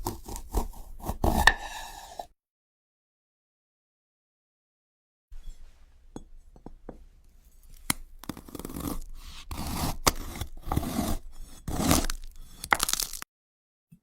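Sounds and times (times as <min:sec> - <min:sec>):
crisp scraping and crunching: 0:11.8 - 0:13.2.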